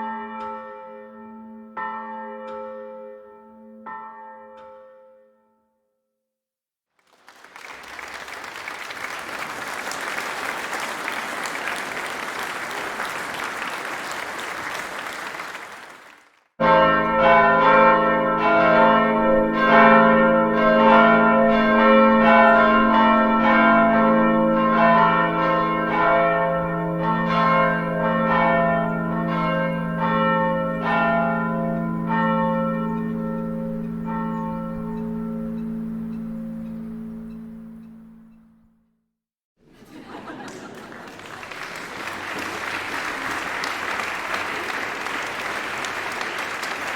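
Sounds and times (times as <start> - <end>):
church bells ringing: 0.0 - 5.2, 16.6 - 38.7
rushing noise like applause: 7.0 - 16.4, 40.2 - 46.9.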